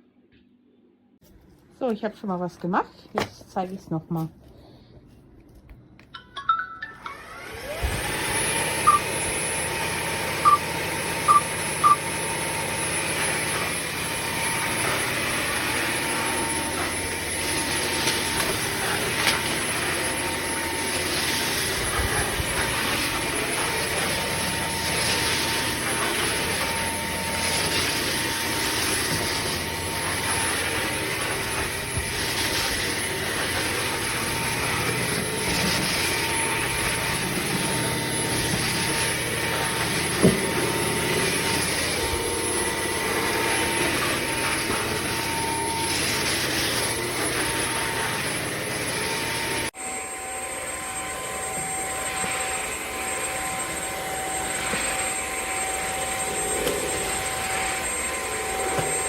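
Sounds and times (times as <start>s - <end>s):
wet-dry vacuum whining: 7.1s - 59.0s
short electronic beeps: 8.8s - 9.1s, 10.4s - 10.7s, 11.3s - 12.0s.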